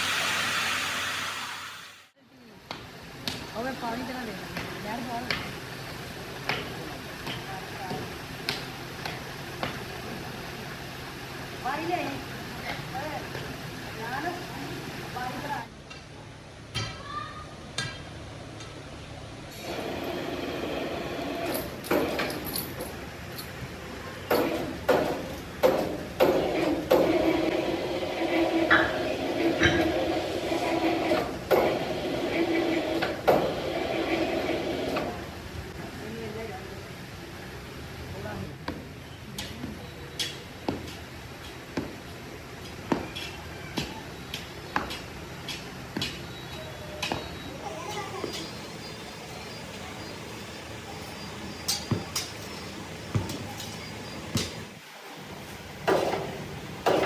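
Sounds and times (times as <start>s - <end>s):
low workshop hum: 0.0s - 57.0s
grating machine sound: 19.5s - 22.5s, 24.3s - 35.6s.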